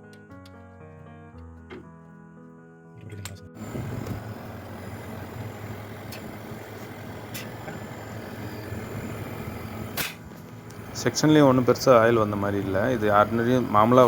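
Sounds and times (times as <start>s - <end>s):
compressor humming: 3.2s - 14.0s
gas hissing from a pipe: 3.6s - 14.0s.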